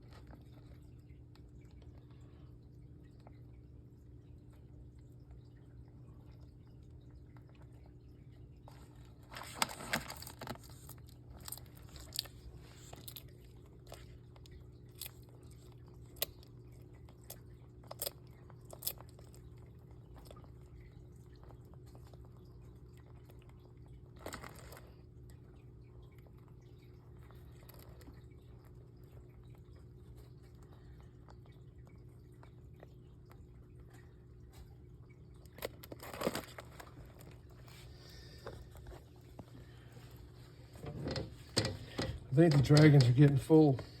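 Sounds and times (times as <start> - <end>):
lizards crunching beetles: 8.7 - 25.4, 35.2 - 44.0.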